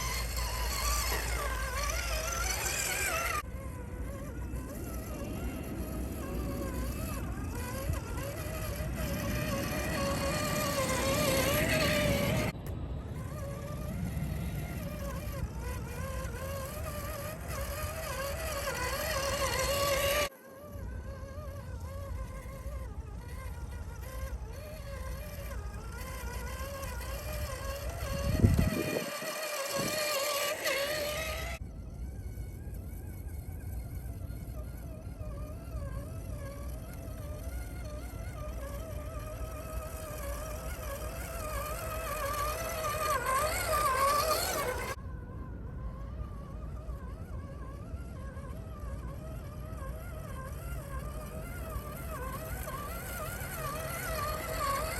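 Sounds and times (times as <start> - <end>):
tyres rumbling on sand: 0.0 - 20.3
electric motor and gearbox whining: 0.0 - 54.9.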